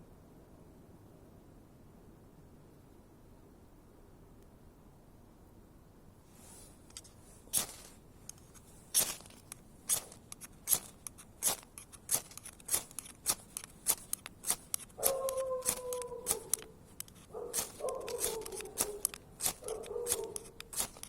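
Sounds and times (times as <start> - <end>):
wood fire crackling and popping: 7.5 - 21.0.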